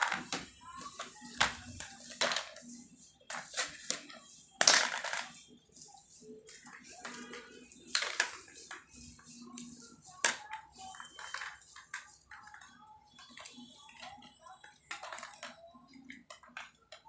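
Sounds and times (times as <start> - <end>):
objects knocking and clattering: 3.3 - 5.4.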